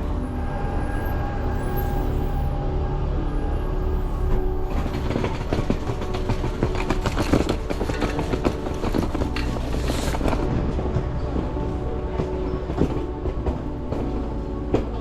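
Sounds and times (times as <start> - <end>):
vehicle rumbling: 0.0 - 15.0
rattles and clacks: 4.3 - 15.0.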